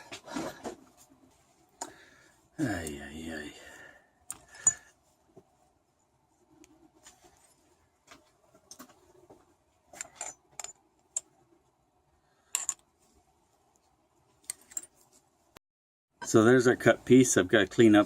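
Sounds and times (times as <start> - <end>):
metal tubing clinking and rattling: 4.3 - 4.9, 9.9 - 11.3.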